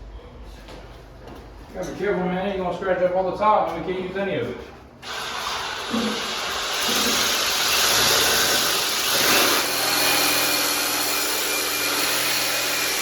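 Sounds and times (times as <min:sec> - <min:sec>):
power tool cutting grout: 0:05.0 - 0:13.0.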